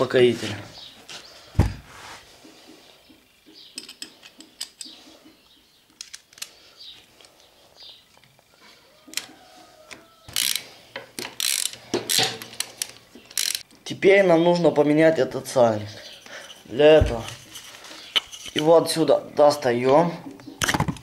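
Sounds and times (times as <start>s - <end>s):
sharp metal clicks: 3.7s - 5.0s, 9.9s - 13.7s
clatter of metal parts: 10.3s - 13.6s
ratchet wrench clicking: 10.3s - 13.7s.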